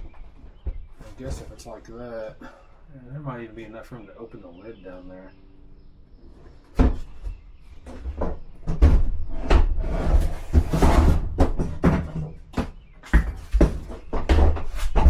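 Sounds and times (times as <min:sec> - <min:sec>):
cooler scraping: 0:01.0 - 0:02.0, 0:07.8 - 0:12.5.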